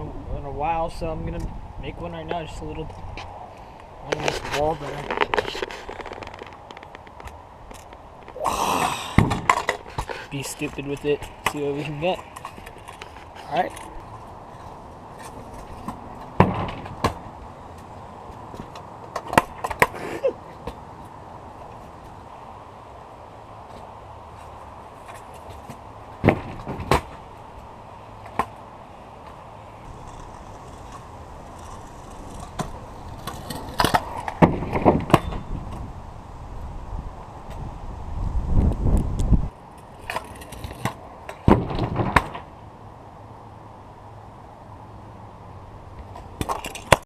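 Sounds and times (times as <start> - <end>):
scooter rattling: 4.0 - 8.4, 9.2 - 20.7, 24.3 - 35.6, 46.0 - 47.0
scooter wheels and deck clacking: 4.0 - 8.4, 9.2 - 22.2, 23.6 - 35.9, 39.0 - 42.6, 45.9 - 47.0.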